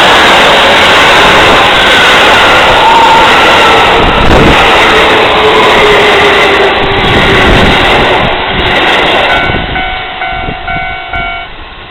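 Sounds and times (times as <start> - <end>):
electric train passing: 0.0 - 11.9
crossing warning bell ringing: 9.3 - 11.9.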